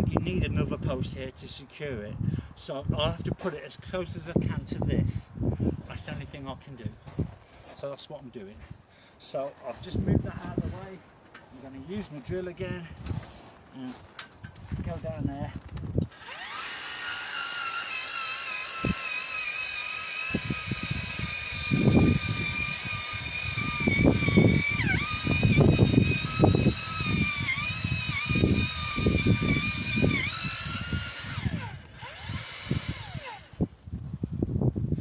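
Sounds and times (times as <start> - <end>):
power drill boring into ground: 16.0 - 33.7.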